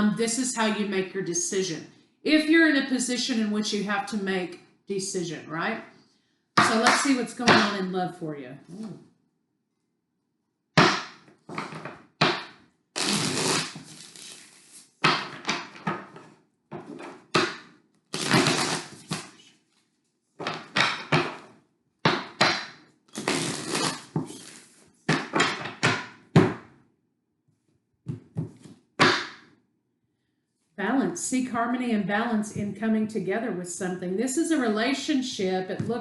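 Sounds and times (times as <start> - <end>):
cards being shuffled: 13.0 - 21.6, 23.1 - 25.7.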